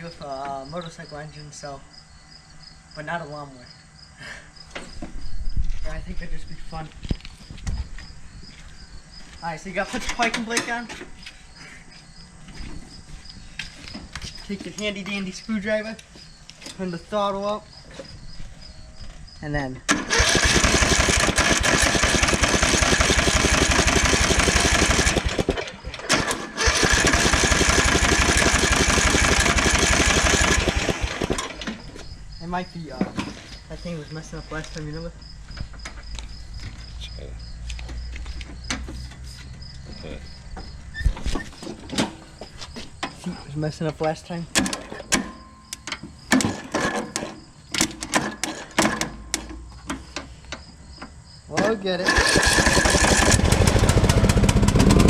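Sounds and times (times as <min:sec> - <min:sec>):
lawnmower engine cranking: 0:19.9 - 0:32.0, 0:44.5 - 0:49.4, 0:51.6 - 0:55.0.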